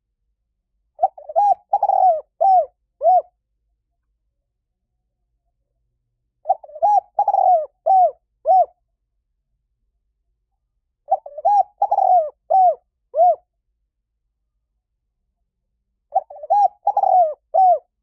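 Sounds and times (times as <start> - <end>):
dove cooing: 1.0 - 3.4, 6.4 - 8.8, 11.1 - 13.5, 16.1 - 18.0.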